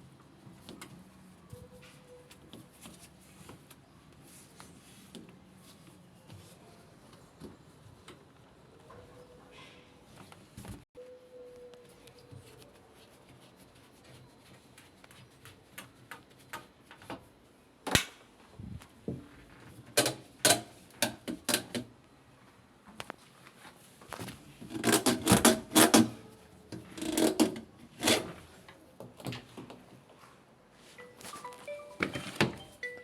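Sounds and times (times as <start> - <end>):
parts and tools clicking and rattling: 19.8 - 21.9, 24.2 - 29.5.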